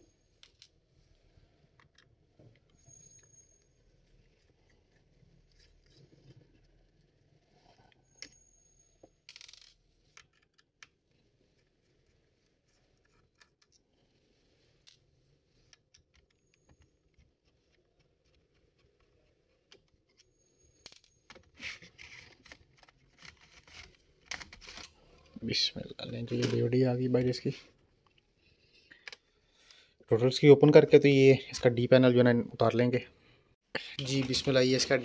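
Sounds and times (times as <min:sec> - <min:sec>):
laptop being taken apart: 0:19.8 - 0:25.3.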